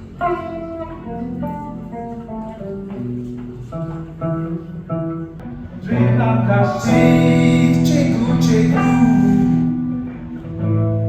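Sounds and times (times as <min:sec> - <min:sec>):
guitar plucking a melody: 0:00.0 - 0:11.0
low bass notes: 0:05.4 - 0:11.0.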